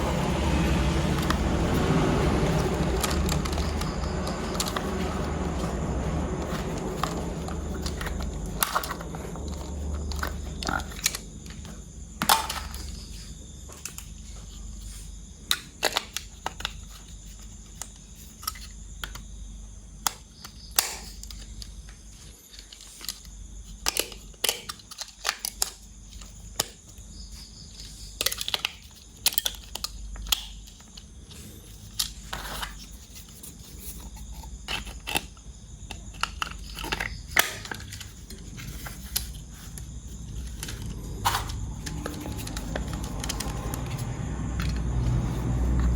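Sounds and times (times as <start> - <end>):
plastic toys clicking and snapping: 2.4 - 13.0, 15.5 - 19.3, 20.0 - 27.0, 27.7 - 33.5, 34.4 - 44.0
low steady hum: 31.3 - 45.9.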